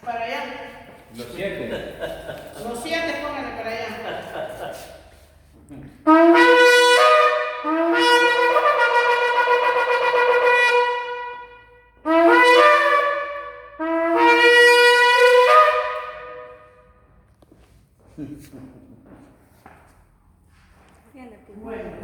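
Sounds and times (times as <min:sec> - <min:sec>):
shofar blasts: 0:06.0 - 0:17.0.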